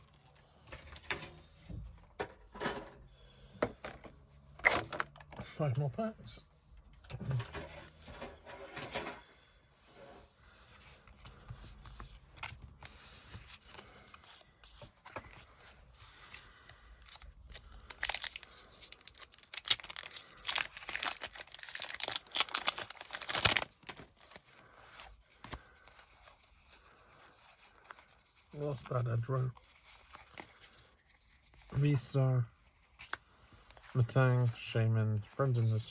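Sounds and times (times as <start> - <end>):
foil wrapper tearing and crinkling: 17.1 - 24.4.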